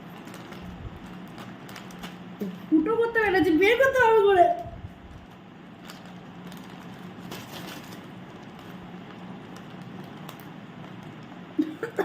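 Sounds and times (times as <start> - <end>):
plastic snack packet crinkling: 0.0 - 2.6, 5.0 - 12.0
steady low hum: 0.0 - 12.0.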